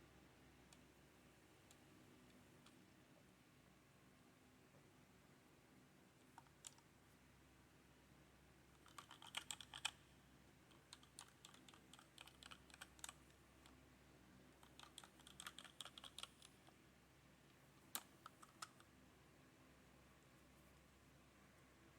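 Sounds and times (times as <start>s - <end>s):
mechanical keyboard typing: 8.8s - 10.0s, 10.7s - 13.8s, 14.6s - 16.8s, 17.9s - 18.8s.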